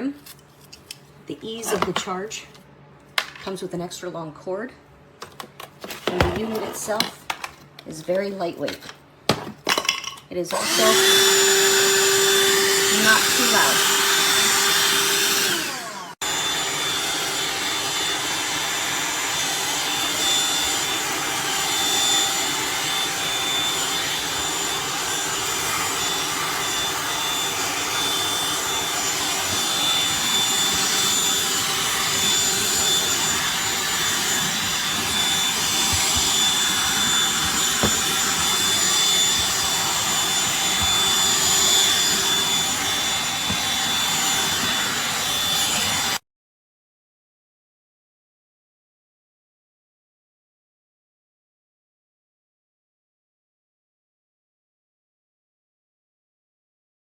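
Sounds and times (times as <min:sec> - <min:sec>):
handheld vacuum running: 0:10.5 - 0:46.2.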